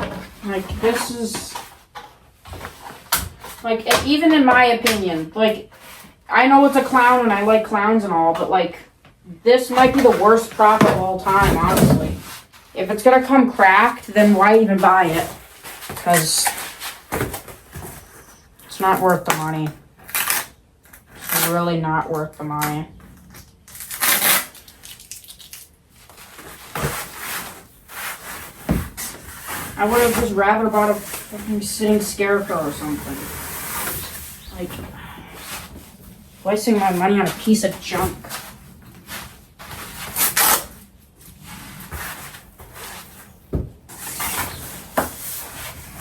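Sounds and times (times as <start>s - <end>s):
plastic rustling and scraping: 23.0s - 46.0s.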